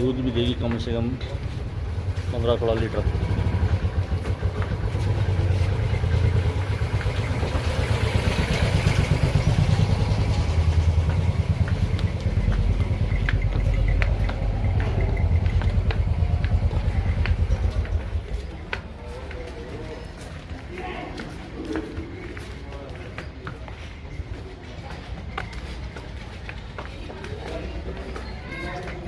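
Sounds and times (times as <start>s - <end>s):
engine chugging: 0.1s - 20.0s.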